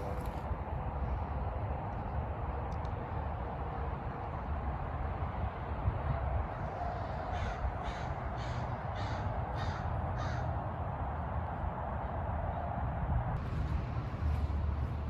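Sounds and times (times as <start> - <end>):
low outdoor rumble: 0.0 - 15.0
crow cawing: 7.3 - 10.5.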